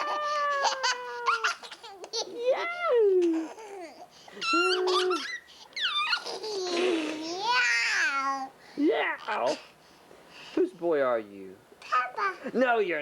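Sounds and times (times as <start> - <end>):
toddler laughing and squealing: 0.0 - 8.4.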